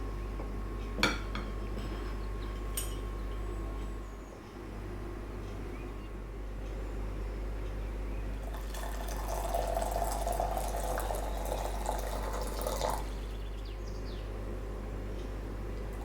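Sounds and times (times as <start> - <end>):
water running from tap: 8.4 - 13.2.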